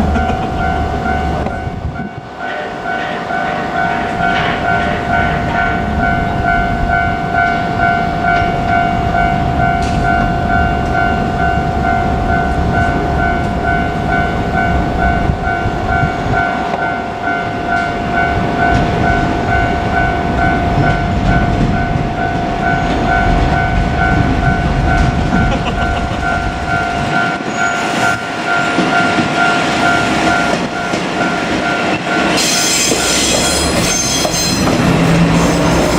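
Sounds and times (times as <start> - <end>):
diesel railcar rumbling past: 0.0 - 35.9
level-crossing bell clanging: 0.0 - 35.9.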